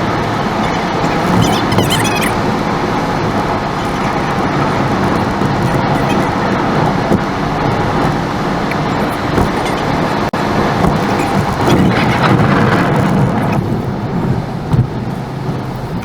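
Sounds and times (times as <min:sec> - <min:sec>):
car road noise: 0:00.0 - 0:16.0.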